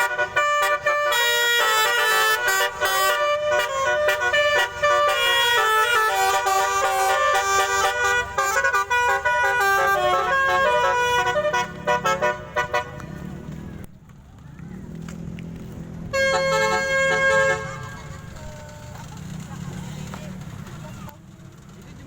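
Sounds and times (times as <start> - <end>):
bus musical horn tune: 0.0 - 13.1, 16.1 - 18.6.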